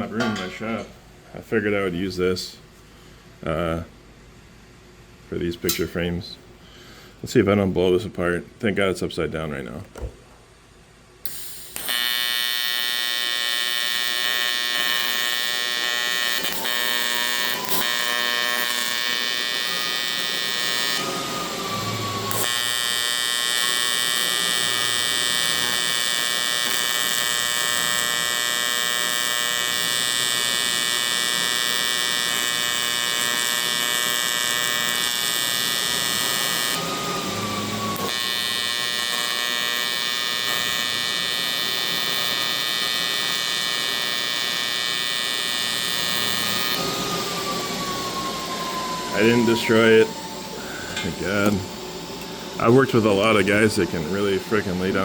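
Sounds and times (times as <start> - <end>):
welding arc buzzing: 11.2 - 55.0.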